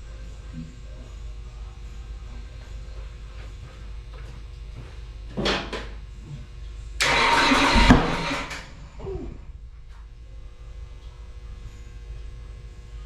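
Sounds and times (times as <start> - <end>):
engine cranking bursts: 7.0 - 8.7.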